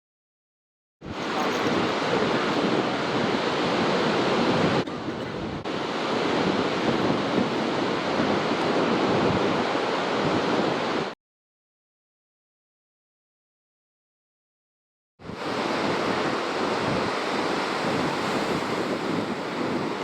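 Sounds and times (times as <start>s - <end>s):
ocean surf breaking: 1.1s - 11.2s, 15.3s - 20.0s.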